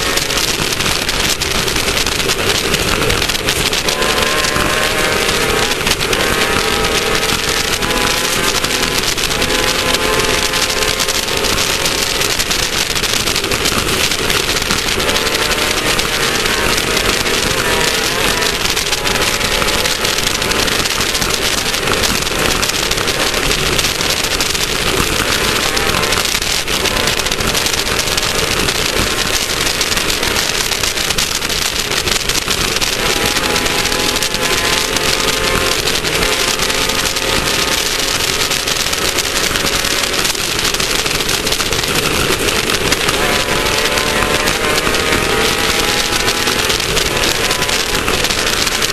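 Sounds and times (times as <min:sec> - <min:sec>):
dirt noise: 0:00.0 - 0:48.9
engine running hard: 0:00.0 - 0:48.9
rattle: 0:00.0 - 0:48.9.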